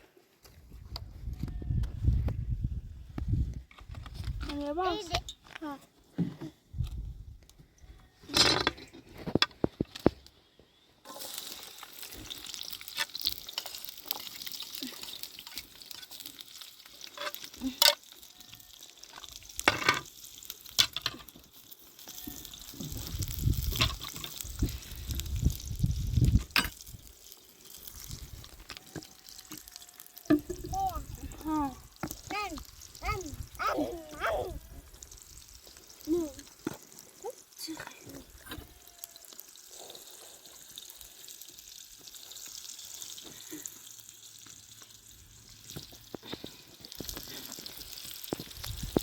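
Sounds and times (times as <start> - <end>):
food frying sizzle: 11.0 - 49.0.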